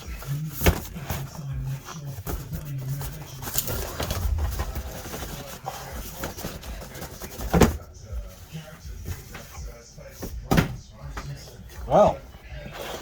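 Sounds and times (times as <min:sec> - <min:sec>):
cardboard box being handled: 0:00.1 - 0:07.8.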